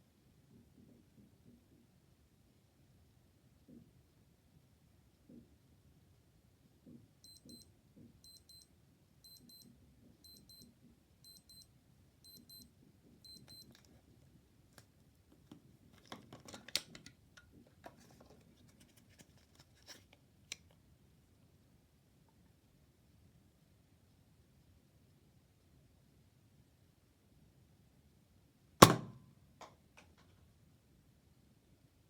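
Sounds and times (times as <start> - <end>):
digital watch alarm beeping: 7.2 - 13.7
small clicks and knocks: 14.8 - 20.8.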